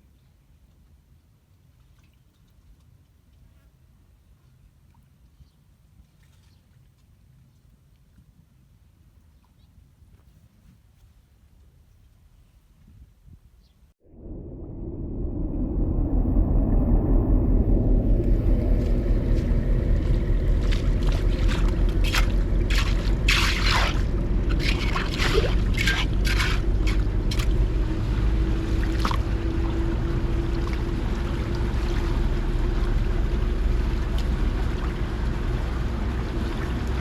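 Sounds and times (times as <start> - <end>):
low rumble: 14.0 - 37.0
floodwater rushing and splashing: 18.2 - 37.0
sharp splashes: 18.8 - 37.0.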